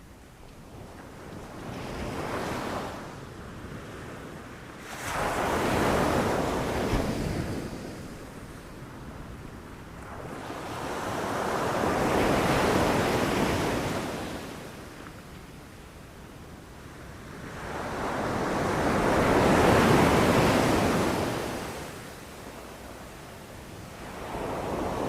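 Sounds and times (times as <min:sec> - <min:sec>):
ocean waves breaking on shore: 0:03.9 - 0:15.0, 0:16.8 - 0:25.0.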